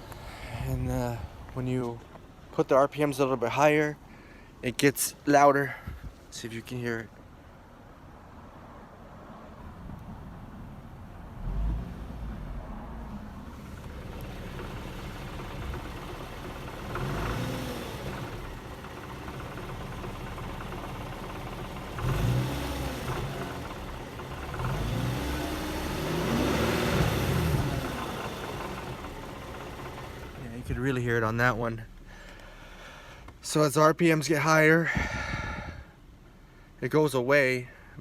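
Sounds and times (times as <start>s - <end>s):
car engine idling and revving: 9.5s - 32.6s
exhaust rattle: 11.4s - 33.4s.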